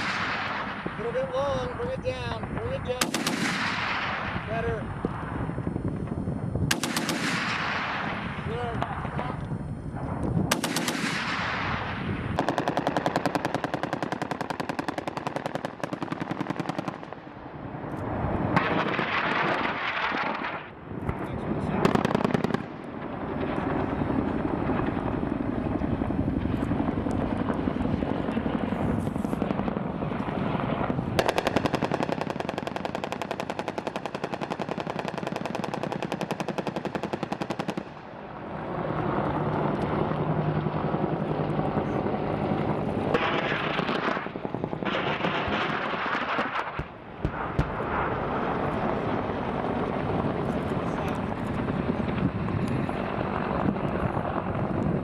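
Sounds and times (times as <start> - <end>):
heavy machine gun firing bursts: 3.0 - 4.4, 6.7 - 8.3, 10.5 - 17.2, 31.2 - 38.0, 43.1 - 47.4.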